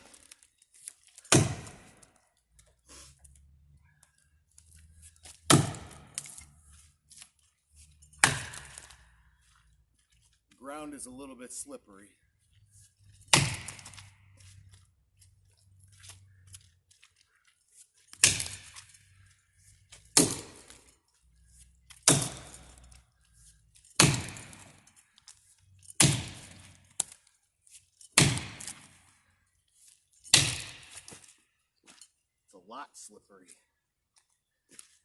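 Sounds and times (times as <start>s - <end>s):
axe chopping into wood: 1.3s - 2.2s, 5.3s - 6.4s, 8.2s - 9.0s, 13.2s - 14.1s, 18.2s - 18.9s, 20.1s - 20.8s, 21.9s - 22.8s, 24.0s - 24.9s, 26.0s - 27.2s, 28.1s - 29.0s, 30.3s - 31.2s.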